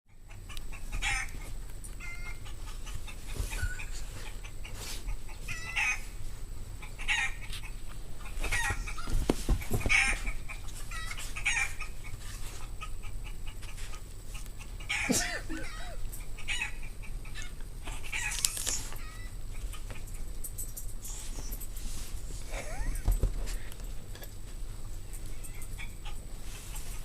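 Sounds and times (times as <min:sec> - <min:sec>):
hen clucking through laptop speakers: 0:00.1 - 0:06.1, 0:06.7 - 0:18.4, 0:25.3 - 0:27.0.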